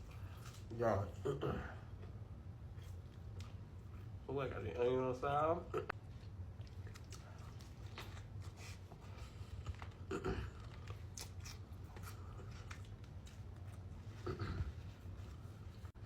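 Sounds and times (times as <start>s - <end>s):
person chewing food: 5.9s - 15.8s.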